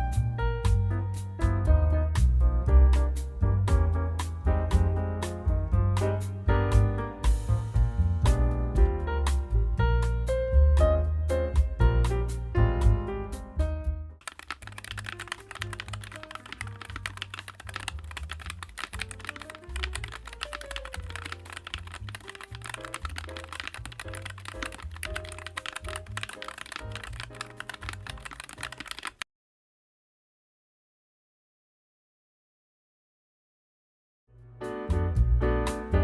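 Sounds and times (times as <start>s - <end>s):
mechanical keyboard typing: 14.2s - 29.2s
background music: 14.5s - 28.8s.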